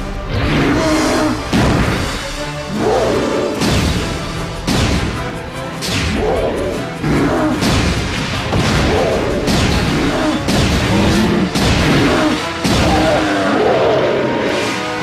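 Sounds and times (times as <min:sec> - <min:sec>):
dramatic background music: 0:00.0 - 0:15.0.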